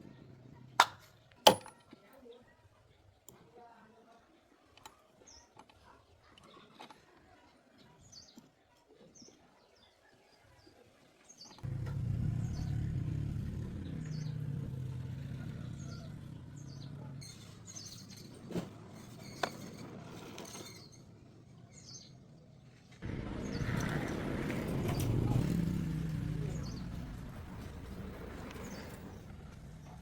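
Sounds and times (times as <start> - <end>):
birds chirping: 11.0 - 18.3, 23.2 - 30.0
small car engine running: 11.6 - 19.6, 23.0 - 30.0.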